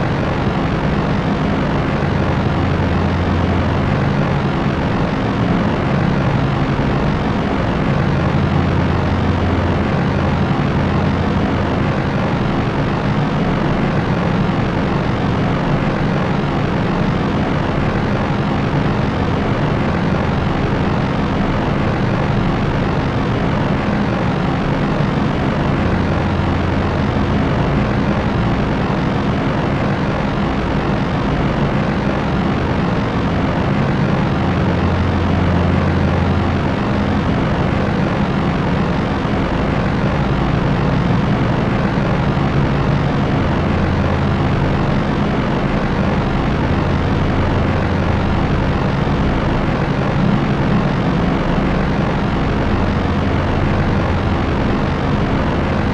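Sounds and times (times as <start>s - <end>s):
propeller airplane droning: 0.0s - 55.9s.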